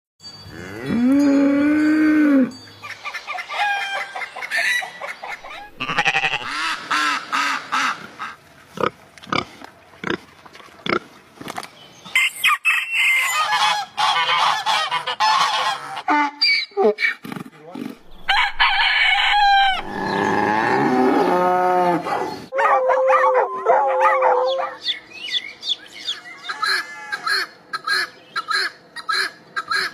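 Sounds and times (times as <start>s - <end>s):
geese honking: 3.1s - 8.4s, 13.0s - 16.3s.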